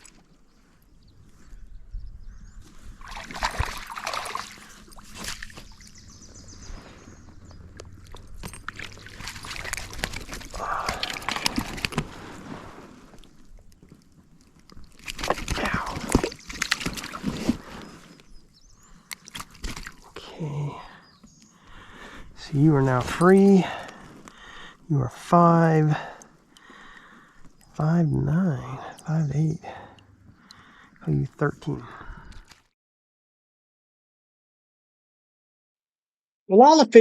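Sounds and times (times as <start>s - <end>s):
water splashing and sloshing: 0.0s - 1.4s, 2.6s - 20.2s, 31.9s - 32.7s.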